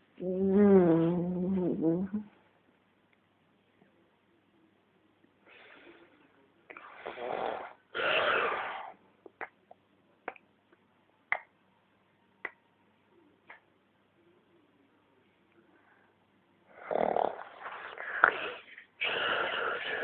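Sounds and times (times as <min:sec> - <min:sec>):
faint breath: 0:05.4 - 0:06.9, 0:15.6 - 0:16.3.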